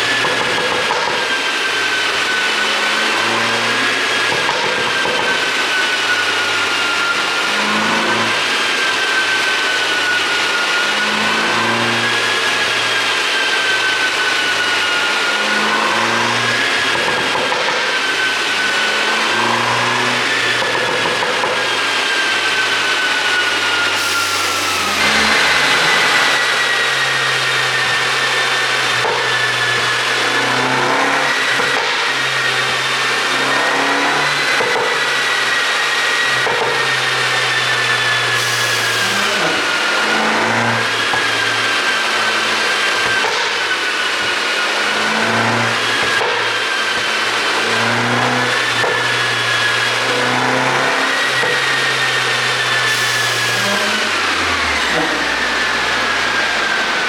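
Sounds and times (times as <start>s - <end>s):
high-pitched whine: 0.0s - 29.0s.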